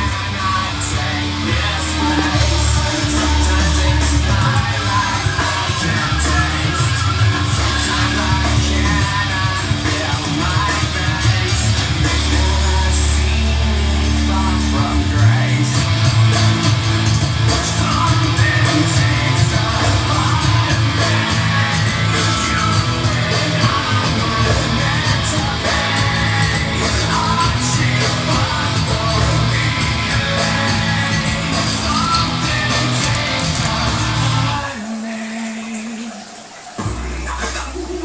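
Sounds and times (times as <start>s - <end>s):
loud rock music with singing: 0.0s - 38.0s.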